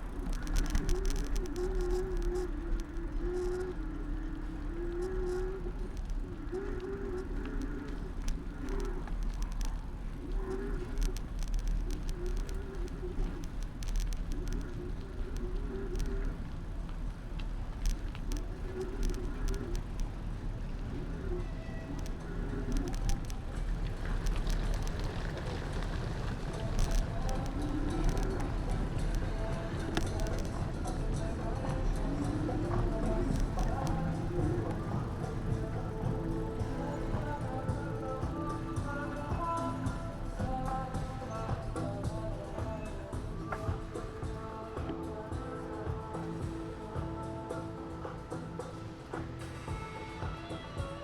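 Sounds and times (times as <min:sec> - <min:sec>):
road and wind rumble: 0:00.0 - 0:51.0
rattling clicks: 0:04.9 - 0:45.2.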